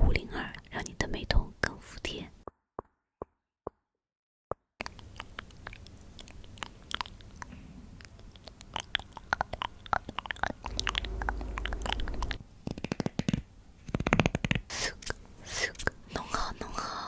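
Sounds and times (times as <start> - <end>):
low rumble: 10.6 - 12.6.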